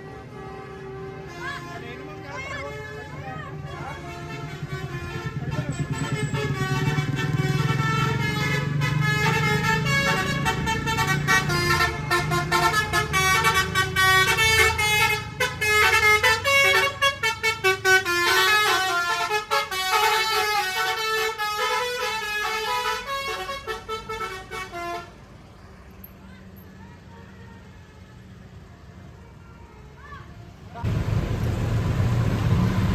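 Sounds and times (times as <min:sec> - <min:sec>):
musical bus horn tune: 0:00.0 - 0:25.5
bus engine rumble: 0:00.0 - 0:32.9.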